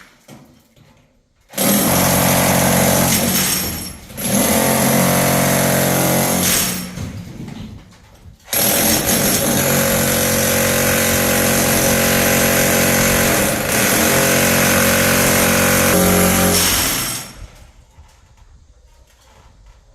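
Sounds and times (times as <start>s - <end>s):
electric demolition hammer: 1.5s - 7.5s, 8.5s - 17.6s.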